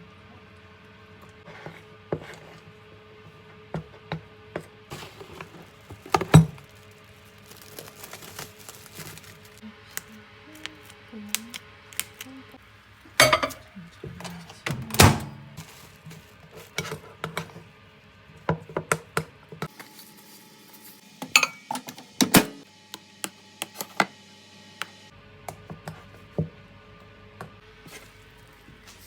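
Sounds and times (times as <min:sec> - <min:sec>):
utensils and dishes clinking: 0:13.2 - 0:15.7, 0:21.2 - 0:22.6.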